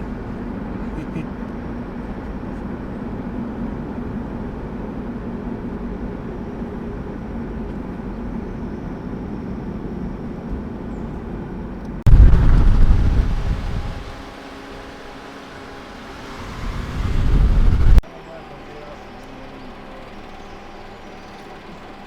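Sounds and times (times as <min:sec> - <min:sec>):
car engine and road noise: 0:00.0 - 0:18.0
loud low rumble: 0:12.1 - 0:18.0.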